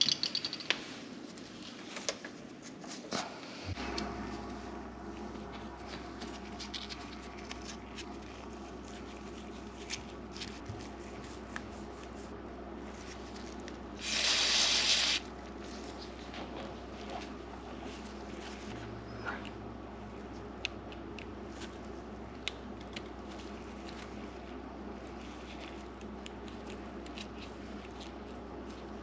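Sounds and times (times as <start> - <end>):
hand tools clicking and tapping: 0.0 - 0.8
steady low hum: 0.0 - 29.0
loud hiss: 14.0 - 15.2.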